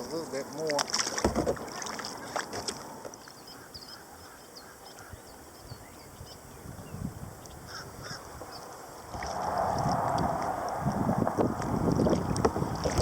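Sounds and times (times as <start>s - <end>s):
birds chirping: 2.1s - 8.8s.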